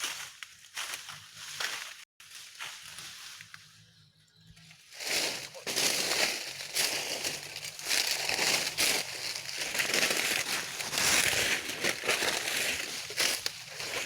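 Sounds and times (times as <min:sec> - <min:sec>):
rustling and crinkling: 0:04.9 - 0:14.0.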